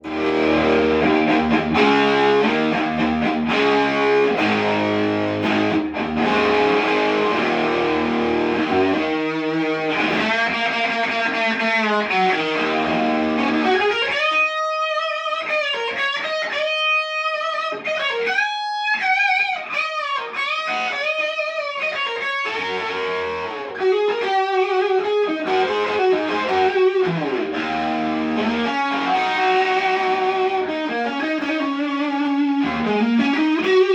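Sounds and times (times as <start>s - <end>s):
sustained bending guitar notes: 0.0s - 15.2s, 22.6s - 33.9s
distorted electric guitar chords: 0.0s - 33.9s.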